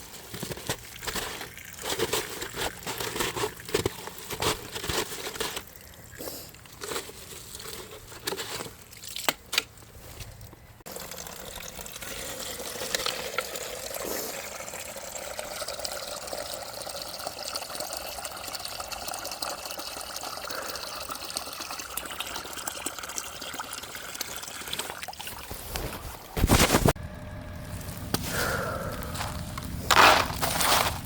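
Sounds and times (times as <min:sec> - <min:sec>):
water pouring and trickling: 0:00.0 - 0:09.3, 0:10.8 - 0:26.3.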